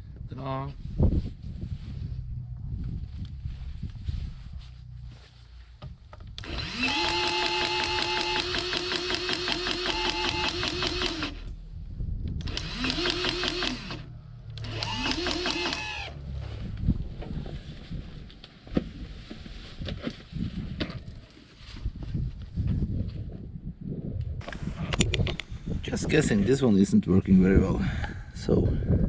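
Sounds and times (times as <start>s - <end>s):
grease gun motor whining: 6.4s - 11.5s, 12.4s - 16.2s.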